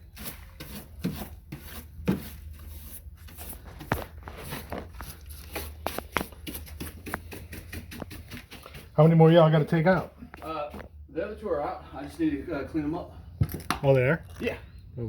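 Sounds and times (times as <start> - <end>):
scraping and rubbing on window: 0.0 - 11.0.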